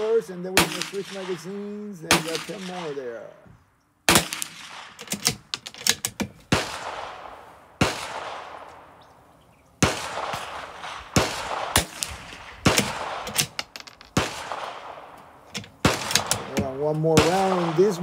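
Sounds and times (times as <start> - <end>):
rifle shots with echo: 0.0 - 3.4, 4.1 - 18.0.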